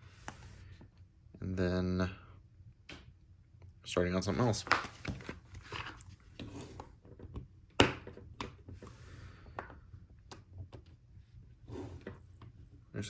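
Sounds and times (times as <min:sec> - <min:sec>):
soft rubbing of parts: 0:10.7 - 0:13.0.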